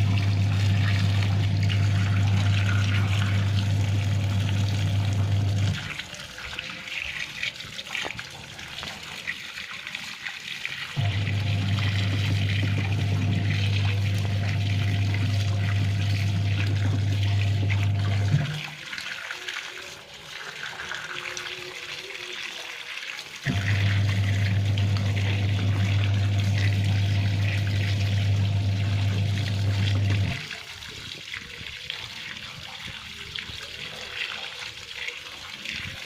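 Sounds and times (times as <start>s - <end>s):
low electric hum: 0.0s - 5.8s, 11.0s - 18.6s, 23.5s - 30.4s
water trickling: 0.0s - 36.0s.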